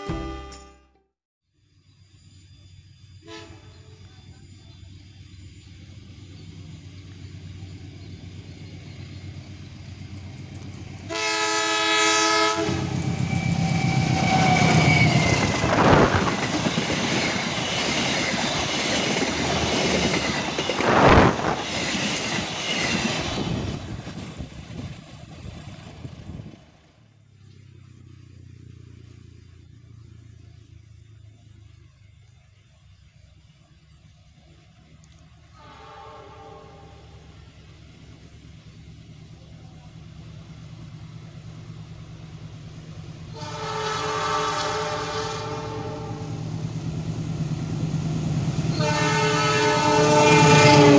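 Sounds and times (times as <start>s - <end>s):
train horn blast: 0.0s - 1.1s, 3.2s - 4.0s, 11.1s - 16.3s, 35.5s - 37.3s, 43.3s - 46.5s, 48.7s - 50.9s
train rumble: 2.7s - 50.9s
wheels clacking over rail joints: 12.7s - 26.8s.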